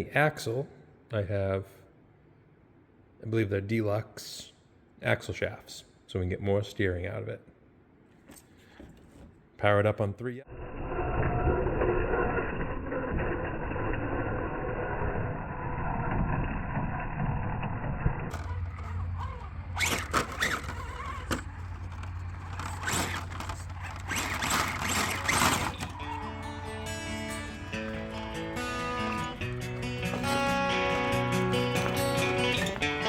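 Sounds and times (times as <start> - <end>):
toy truck motor and gears whirring: 10.5 - 33.0.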